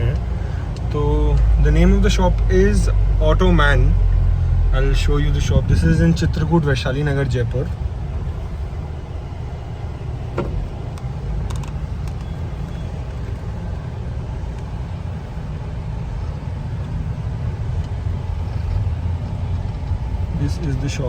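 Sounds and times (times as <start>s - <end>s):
motor vehicle rumbling: 0.0s - 21.0s.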